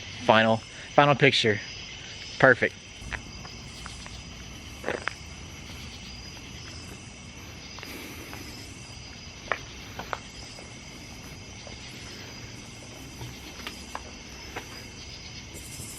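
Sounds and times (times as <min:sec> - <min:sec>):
crickets trilling: 0:00.0 - 0:15.9.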